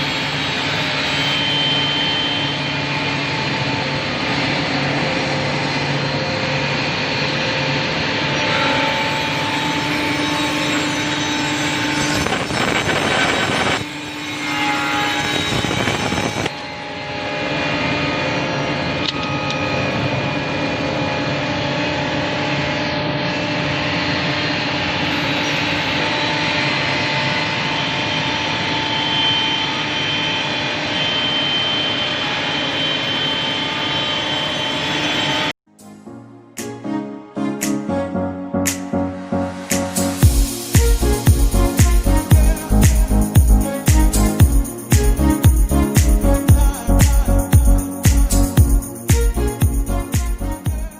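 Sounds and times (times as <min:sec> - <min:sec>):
scroll saw whining: 0:00.0 - 0:35.5.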